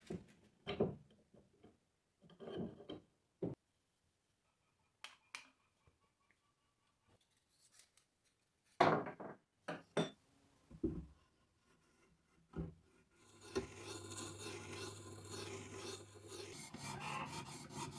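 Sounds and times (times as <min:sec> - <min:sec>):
hand plane cutting wood: 0:13.2 - 0:17.9.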